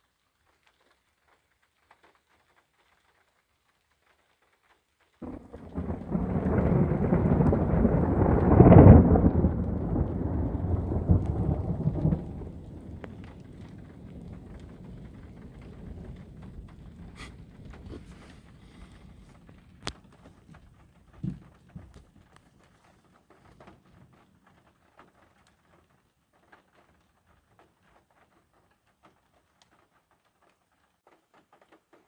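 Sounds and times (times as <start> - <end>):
thunder rumbling: 5.2 - 22.4.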